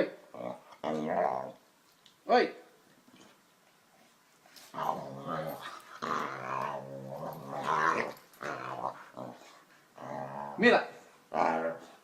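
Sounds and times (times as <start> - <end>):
dog growling: 0.3 - 1.6, 4.7 - 10.7, 11.3 - 12.0.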